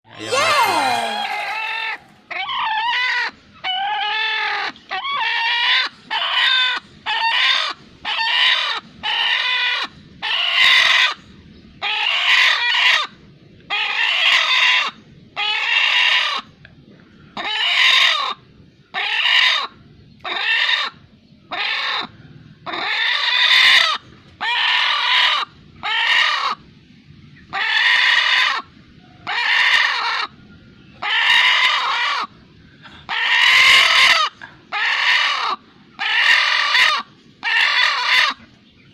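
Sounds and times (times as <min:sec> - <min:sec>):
chicken squawking: 0:00.1 - 0:11.1, 0:27.5 - 0:28.6, 0:29.2 - 0:30.3, 0:31.0 - 0:32.3, 0:33.1 - 0:38.4.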